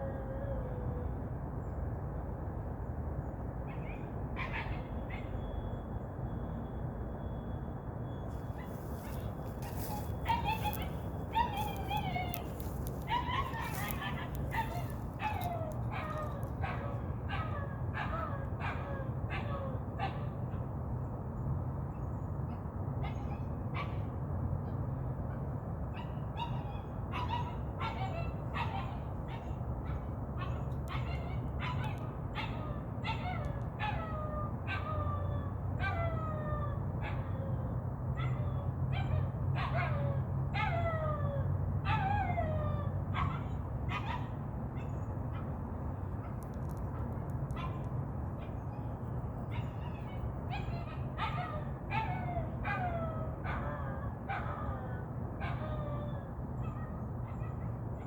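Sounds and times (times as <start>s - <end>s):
puppy yelping and barking: 8.6s - 20.3s, 26.0s - 45.4s, 49.5s - 58.0s.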